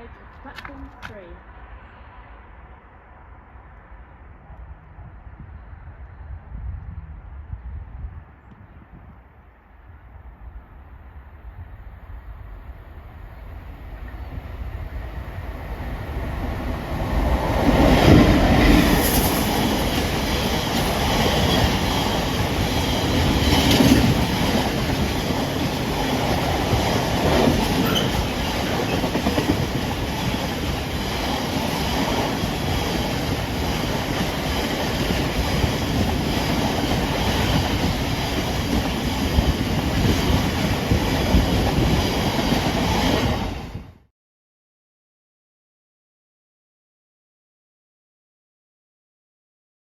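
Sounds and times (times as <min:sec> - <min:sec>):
train passing on rails: 0:00.0 - 0:44.1.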